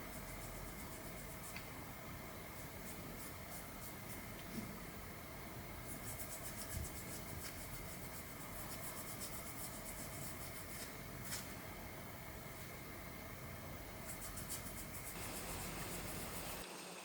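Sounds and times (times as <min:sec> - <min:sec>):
rubbing strokes: 0:05.8 - 0:11.5.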